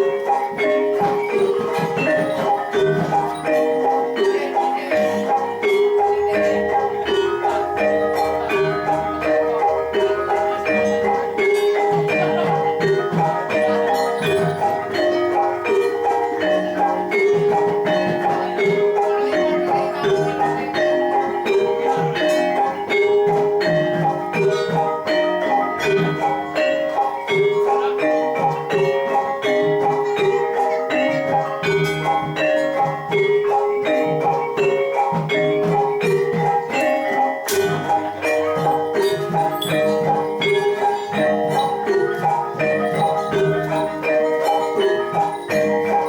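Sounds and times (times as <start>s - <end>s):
metallophones striking fast melody: 0.0s - 46.0s
sharp percussive strokes: 31.6s - 46.0s.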